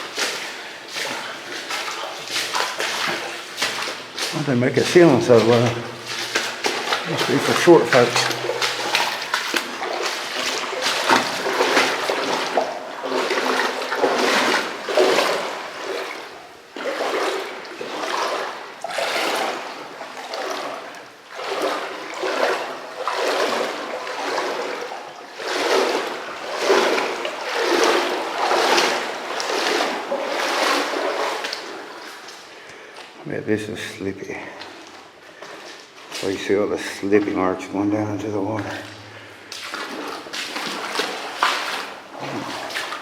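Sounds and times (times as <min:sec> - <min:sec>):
splashing through shallow water: 0:00.0 - 0:32.6, 0:38.6 - 0:43.0.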